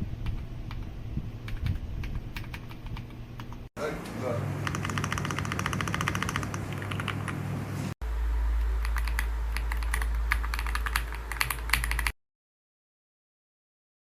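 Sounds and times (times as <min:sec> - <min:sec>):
mechanical keyboard typing: 0:00.2 - 0:03.6, 0:04.6 - 0:07.4, 0:08.8 - 0:12.2
low hum: 0:06.4 - 0:11.8.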